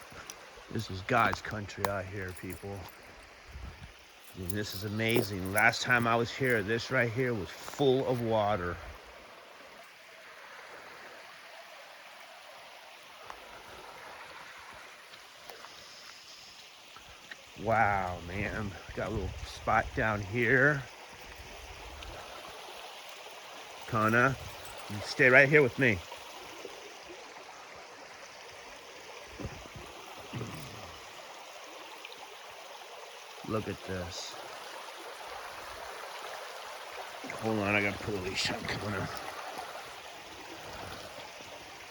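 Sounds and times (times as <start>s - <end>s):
creek water flowing over rocks: 0.0s - 41.9s
light ticks: 1.1s - 2.9s.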